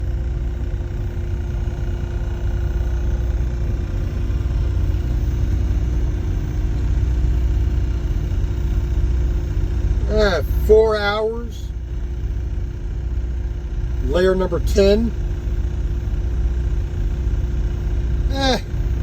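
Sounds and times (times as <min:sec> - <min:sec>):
steady hum of tones: 0:00.0 - 0:19.0
truck engine idling: 0:00.0 - 0:19.0.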